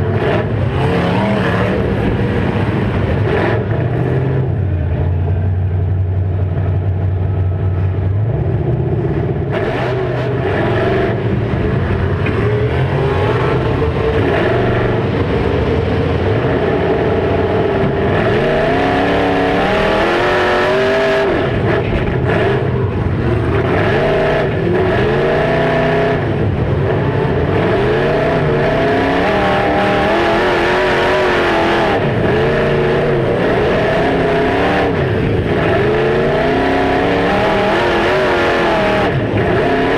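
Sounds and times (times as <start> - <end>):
car engines revving: 0.0 - 39.9.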